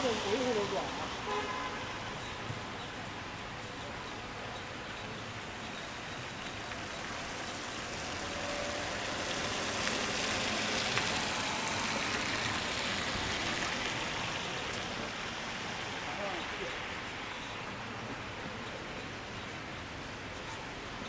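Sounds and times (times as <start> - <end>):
rain falling on a street: 0.0 - 21.0.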